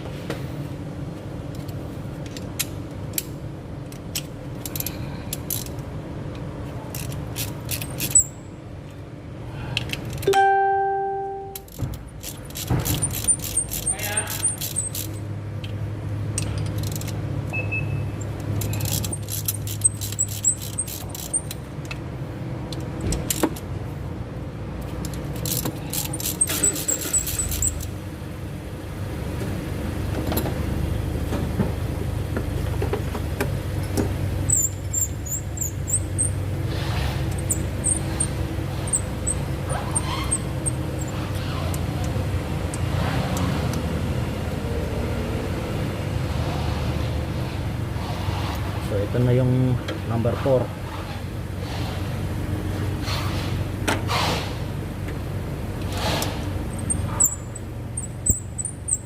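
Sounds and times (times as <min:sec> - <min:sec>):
metal tools clinking: 0:10.2 - 0:15.2
sharp metallic clicks of hand tools: 0:11.5 - 0:17.2.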